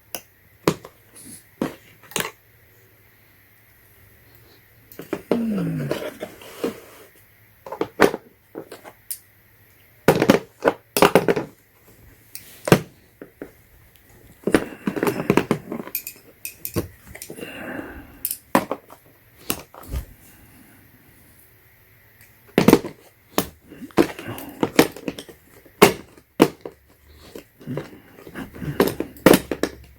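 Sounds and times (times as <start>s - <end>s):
metal wrenches clinking: 15.7s - 17.4s.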